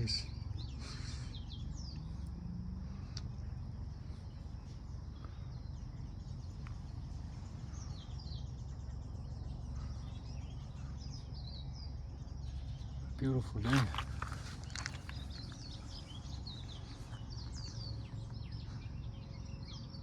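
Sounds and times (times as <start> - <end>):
steady low rumble: 0.0 - 20.0
birds chirping falling notes: 3.0 - 20.0.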